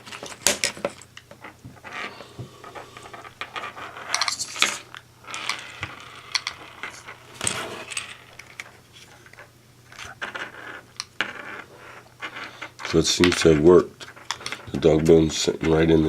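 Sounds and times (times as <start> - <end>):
small metal parts clicking and rattling: 3.0 - 11.2, 12.2 - 15.3.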